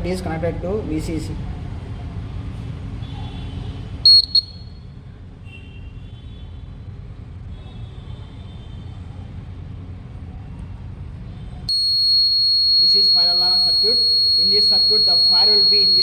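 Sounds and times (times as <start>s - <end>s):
low background noise: 0.0s - 16.0s
high-pitched buzzer beeps: 4.1s - 4.8s, 11.7s - 16.0s.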